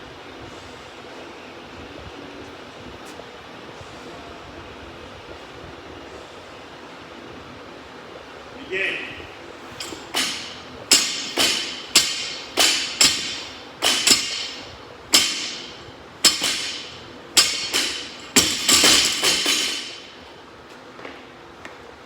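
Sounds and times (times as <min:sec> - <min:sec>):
barbells clanking on floor: 0:09.7 - 0:20.3.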